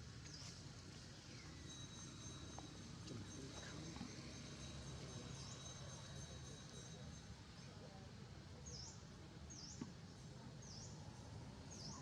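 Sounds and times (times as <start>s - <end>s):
outdoor background noise: 0.0s - 12.0s.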